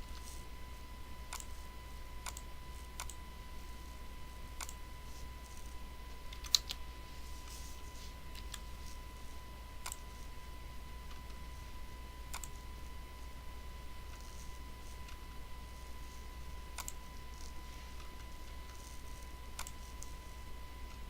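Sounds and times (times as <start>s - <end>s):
computer mouse clicks: 1.3s - 1.6s, 2.2s - 3.2s, 4.6s - 4.8s, 5.4s - 6.8s, 8.3s - 9.0s, 9.8s - 10.3s, 12.3s - 12.7s, 14.1s - 15.2s, 16.1s - 20.2s.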